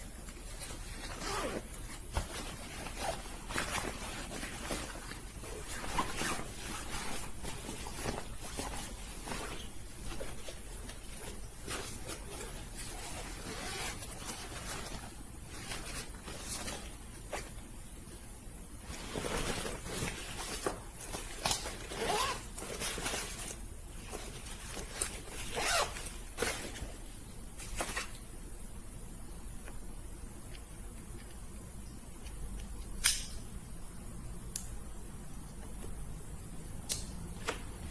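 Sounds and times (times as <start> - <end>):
suitcase zipper being pulled: 1.2 - 1.6.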